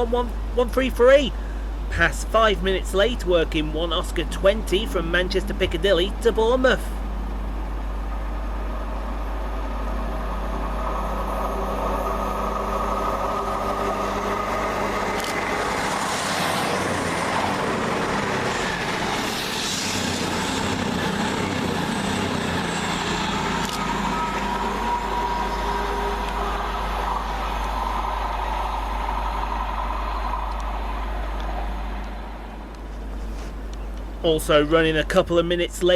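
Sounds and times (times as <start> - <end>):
diesel train engine drone: 0.0 - 35.9
wheel and rail noise: 0.0 - 35.9.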